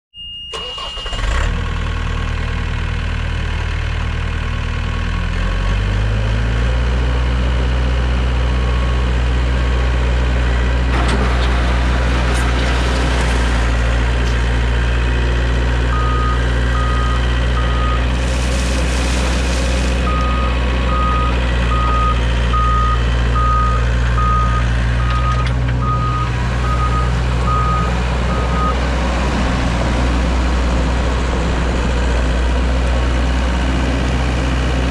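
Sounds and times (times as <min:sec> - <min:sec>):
backup alarm beeping: 0:00.1 - 0:01.4
skid steer engine running: 0:00.5 - 0:34.9.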